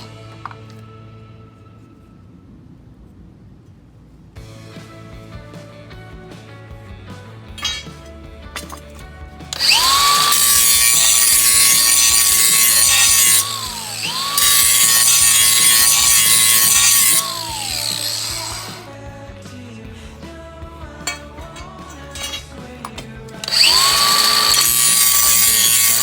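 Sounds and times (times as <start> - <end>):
background music: 0.0 - 2.5, 4.4 - 26.0
power tool motor whine: 9.6 - 18.8, 23.4 - 26.0.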